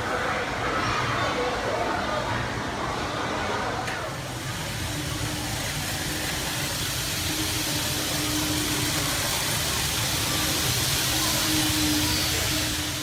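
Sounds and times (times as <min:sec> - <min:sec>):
model train whirring on track: 0:02.8 - 0:13.0.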